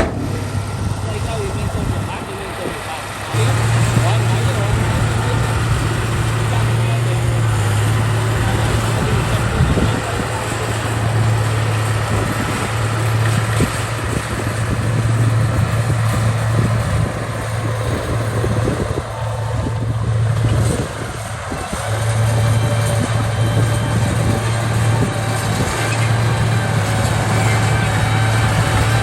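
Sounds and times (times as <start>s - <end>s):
heavy diesel engine droning: 0.0s - 29.0s.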